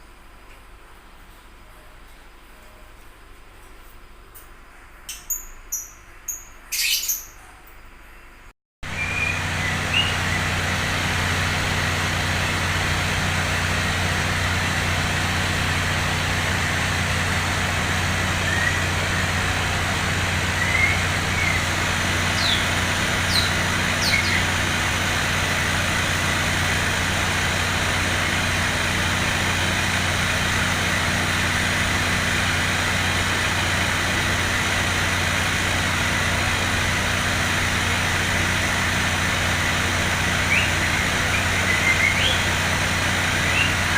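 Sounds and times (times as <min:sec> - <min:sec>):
steady mechanical hum: 0:00.0 - 0:43.9
faint songbird chirps: 0:04.7 - 0:10.5, 0:22.3 - 0:24.5, 0:40.5 - 0:42.5
loud rushing hiss: 0:08.9 - 0:43.9.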